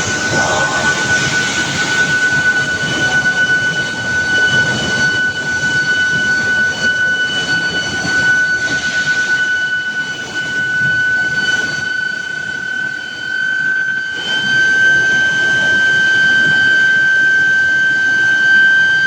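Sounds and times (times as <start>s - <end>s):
rumbling machinery noise: 0.0s - 7.5s
high-pitched induction coil whine: 0.0s - 19.0s.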